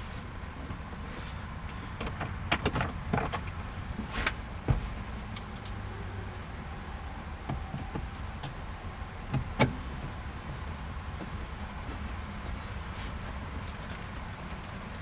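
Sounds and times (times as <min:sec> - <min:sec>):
faint cricket chirping: 0:05.7 - 0:07.3.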